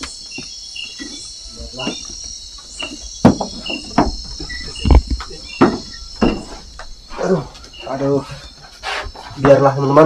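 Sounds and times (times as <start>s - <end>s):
crickets and insects trilling: 0.0s - 10.0s
sharp knocks: 2.8s - 7.0s.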